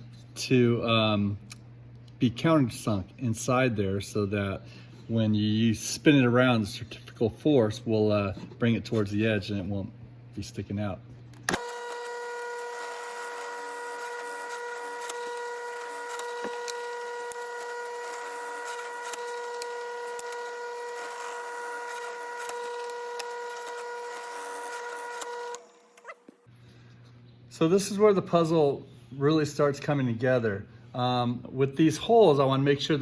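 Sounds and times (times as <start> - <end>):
drill bit cutting wood: 11.5 - 26.2
drill press motor whine: 11.5 - 26.5.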